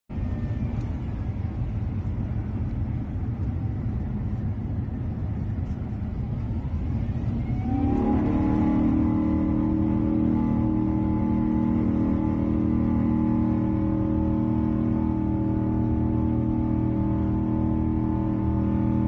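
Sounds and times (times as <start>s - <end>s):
jet engines rumbling: 0.1s - 19.0s
rising pitched tones: 7.4s - 19.0s.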